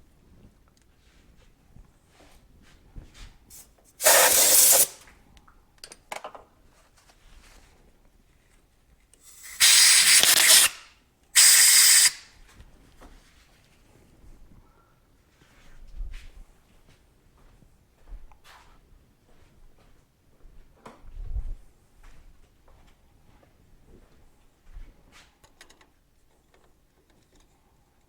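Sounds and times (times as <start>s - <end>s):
air blow gun hissing blasts: 4.0s - 5.0s, 9.3s - 10.8s, 11.4s - 12.2s.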